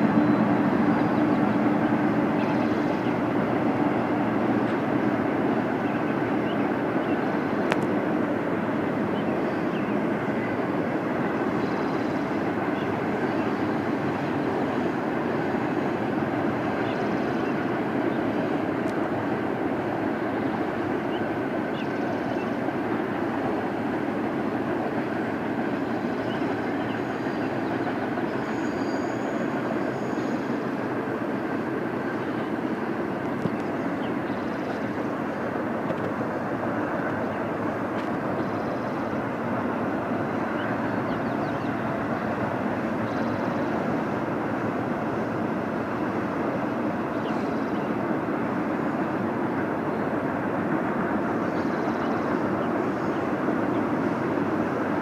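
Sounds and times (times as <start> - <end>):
freight train wheels on rails: 0.0 - 55.0
high wheel squeals: 28.3 - 30.6.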